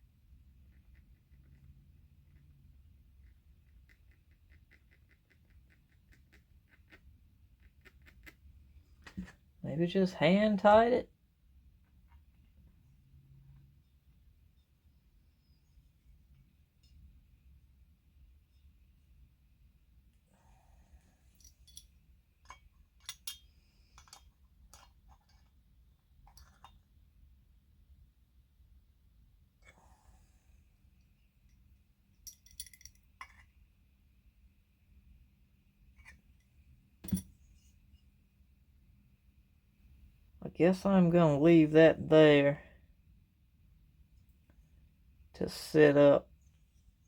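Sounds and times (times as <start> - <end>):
small metal parts clicking: 21.4 - 25.5, 32.2 - 33.4.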